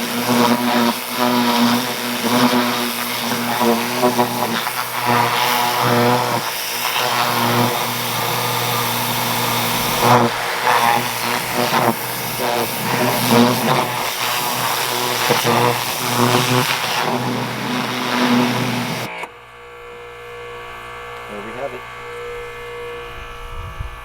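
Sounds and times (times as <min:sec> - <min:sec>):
water jet hissing and splashing: 0:00.0 - 0:19.1
pressure washer motor hum: 0:00.0 - 0:24.0.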